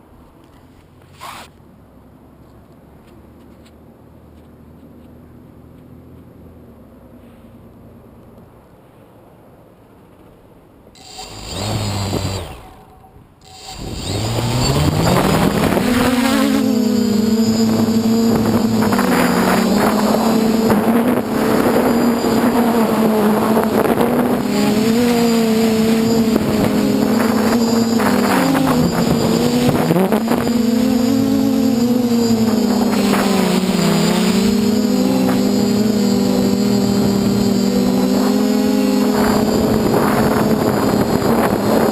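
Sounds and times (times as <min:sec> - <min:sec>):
short burst: 0:11.0 - 0:37.4
quadcopter motors humming: 0:11.0 - 0:41.9.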